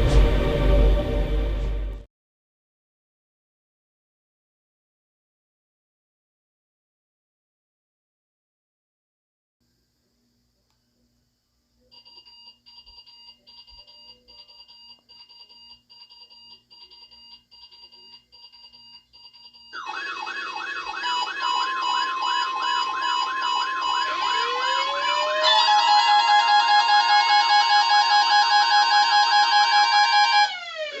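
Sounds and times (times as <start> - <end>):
fast-repeating beep: 16.1 - 25.4
steady alarm tone: 19.3 - 31.0
siren winding up: 19.8 - 31.0
warbling siren alerts: 19.8 - 31.0.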